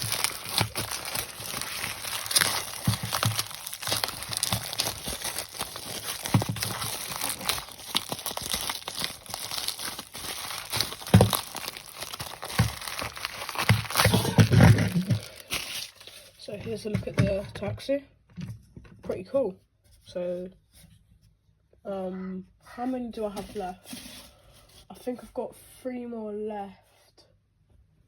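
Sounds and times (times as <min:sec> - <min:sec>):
plastic wrap crinkling: 0:00.0 - 0:16.5.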